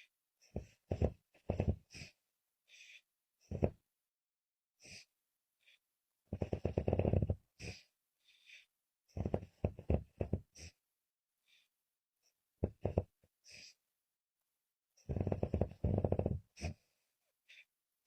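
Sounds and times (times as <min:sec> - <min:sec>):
woman snoring with rattle: 0:06.3 - 0:07.8, 0:15.0 - 0:16.8.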